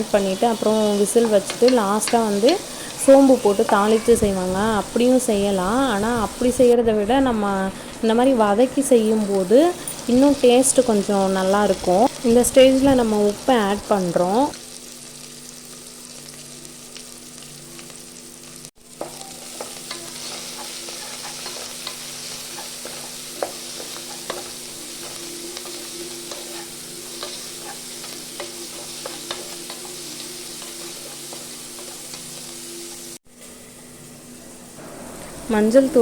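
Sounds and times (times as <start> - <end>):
vegetables sizzling in hot oil: 0.0 - 33.5
spoon scraping metal pot: 19.6 - 30.0.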